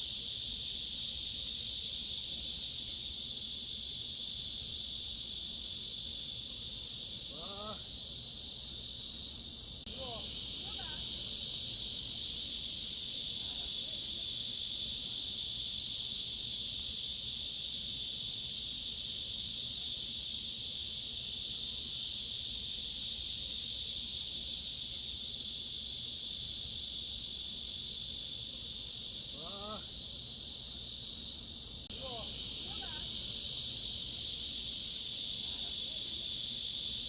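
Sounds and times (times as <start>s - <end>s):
cicadas buzzing: 0.0s - 37.0s.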